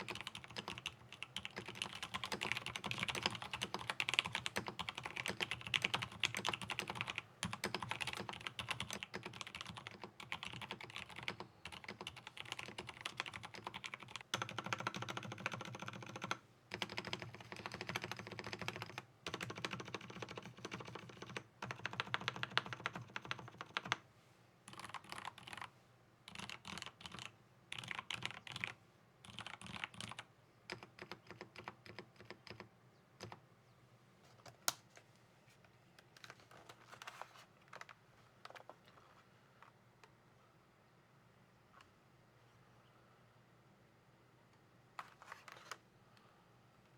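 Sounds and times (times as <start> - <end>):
typing on a mechanical keyboard: 0.0 - 24.0, 24.7 - 25.7, 26.3 - 33.4.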